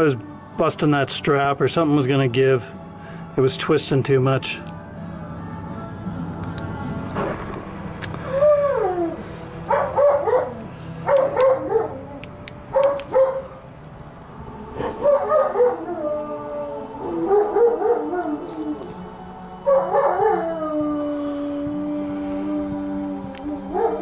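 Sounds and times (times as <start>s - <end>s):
dog howling and whining: 8.2s - 13.6s, 14.5s - 24.0s.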